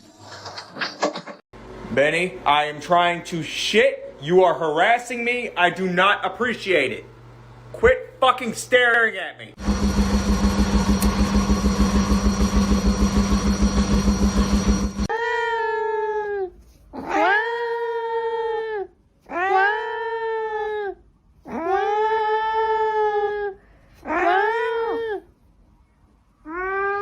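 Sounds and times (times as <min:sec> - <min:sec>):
mechanical whirring: 0:09.6 - 0:15.1
cat yowling: 0:15.1 - 0:25.3, 0:26.5 - 0:27.0.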